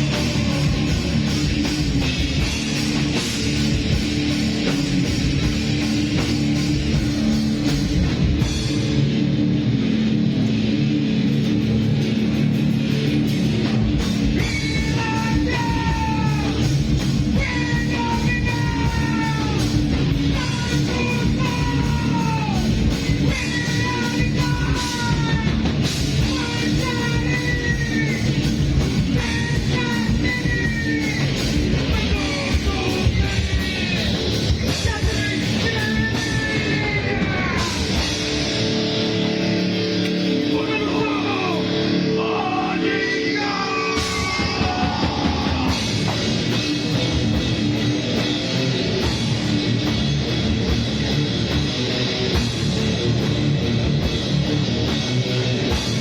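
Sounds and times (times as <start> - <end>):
vocalist singing: 0.0 - 3.0, 14.3 - 38.7, 40.4 - 46.2
live rock band playing: 0.0 - 56.0.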